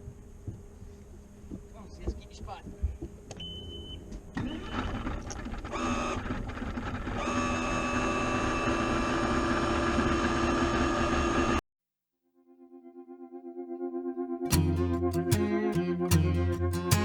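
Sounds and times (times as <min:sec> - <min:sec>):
machine whining: 0:04.3 - 0:11.6.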